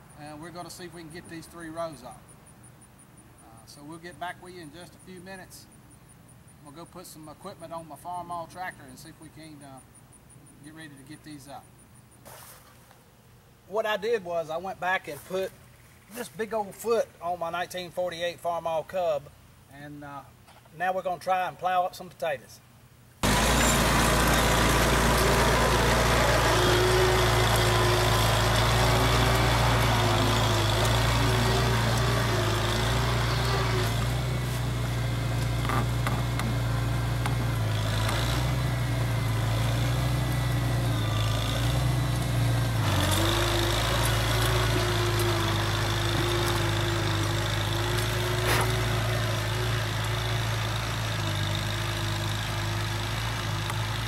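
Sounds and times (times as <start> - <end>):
tractor engine running: 23.2 - 54.0.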